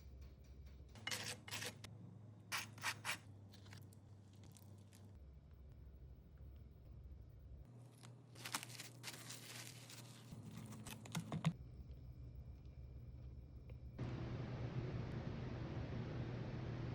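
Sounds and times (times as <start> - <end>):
plastic wrap crinkling: 7.9 - 11.4.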